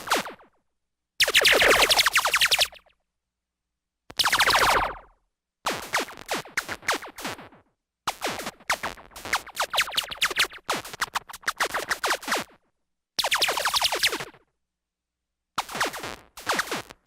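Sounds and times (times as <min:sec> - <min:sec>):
synthesized laser gun zaps: 0:01.2 - 0:02.9, 0:04.2 - 0:05.1.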